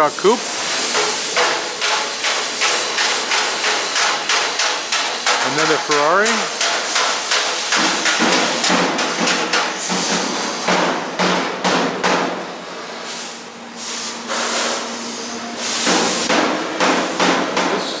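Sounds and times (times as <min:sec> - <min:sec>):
hammers striking sheet metal: 0:00.5 - 0:12.4, 0:15.8 - 0:18.0.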